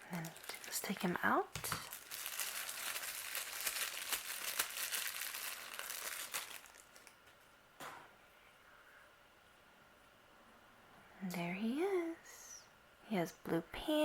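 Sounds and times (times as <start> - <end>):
bag crinkling: 0.0 - 1.0, 1.6 - 7.2.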